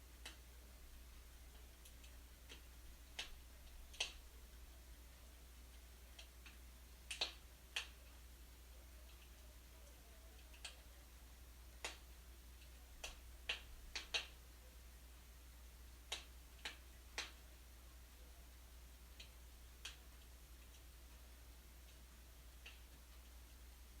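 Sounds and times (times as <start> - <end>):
fire crackling and popping: 0.2 - 5.0, 5.6 - 8.2, 11.7 - 14.4.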